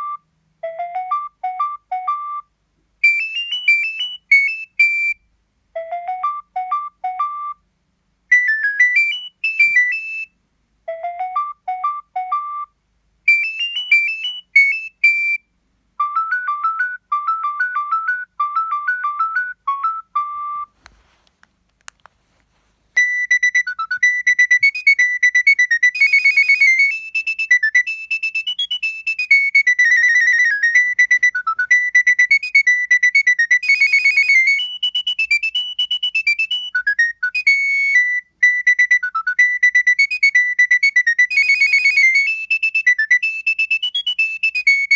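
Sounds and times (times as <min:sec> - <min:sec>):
mobile phone ringtone melody: 0:00.0 - 0:02.4, 0:03.1 - 0:05.2, 0:13.3 - 0:15.4, 0:22.5 - 0:38.0, 0:39.4 - 0:44.9
faint clicks: 0:20.8 - 0:22.5.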